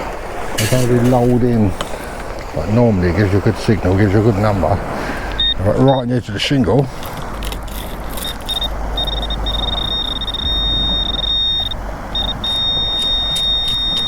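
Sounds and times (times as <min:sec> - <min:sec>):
metal detector high-pitched tone: 0:05.4 - 0:06.1, 0:07.7 - 0:14.0
wind rumble on microphone: 0:06.9 - 0:14.0.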